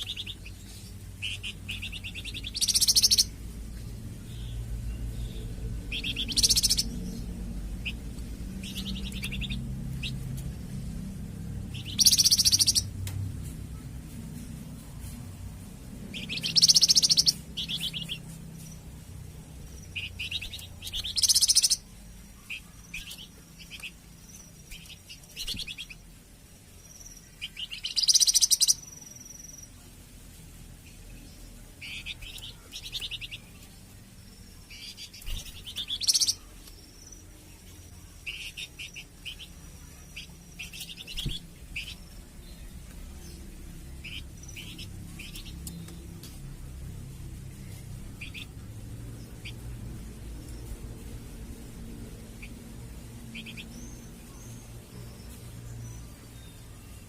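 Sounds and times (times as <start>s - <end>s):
faint low background hum: 0.0s - 57.0s
songbird trilling: 1.2s - 3.4s, 5.2s - 10.2s, 11.8s - 12.9s, 16.1s - 18.2s, 19.8s - 26.0s, 26.9s - 29.5s, 34.7s - 37.2s.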